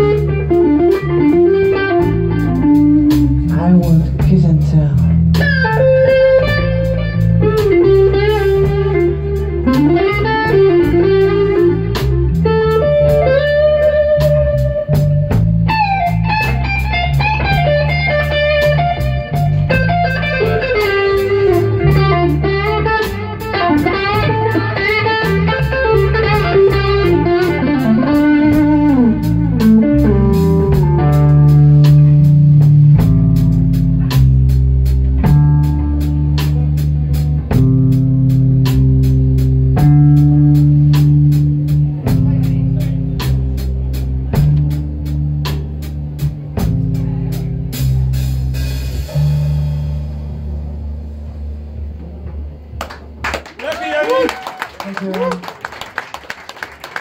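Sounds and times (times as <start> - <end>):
electric guitar solo: 0.0 - 3.5, 5.0 - 34.2, 53.6 - 55.8
steady drum beat: 0.0 - 53.2
bass guitar: 0.0 - 57.0.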